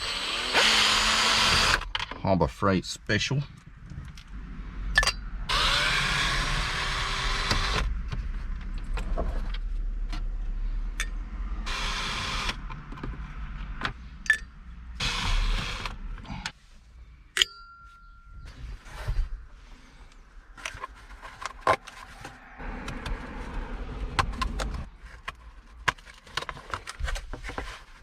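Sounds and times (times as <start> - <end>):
cordless power driver running: 0.0 - 1.8, 5.5 - 7.9, 11.7 - 12.6, 15.0 - 16.0
tool and bolt clicks: 5.0 - 5.6.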